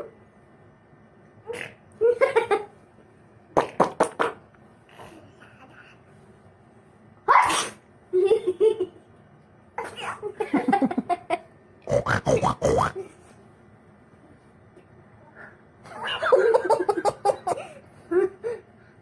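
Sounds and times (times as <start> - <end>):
person imitating animal sounds: 11.8 - 13.1.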